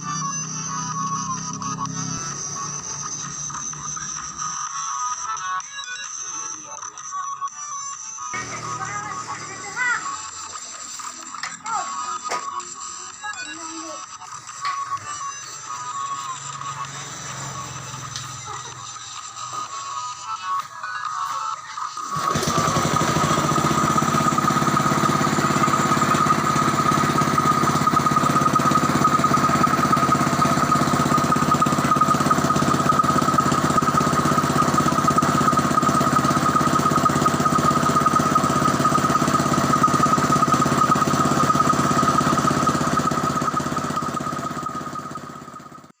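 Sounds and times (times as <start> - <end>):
engine driving air compressor: 0.0 - 5.4, 8.3 - 13.0, 15.8 - 19.9, 21.8 - 46.0
high whine: 22.0 - 46.0.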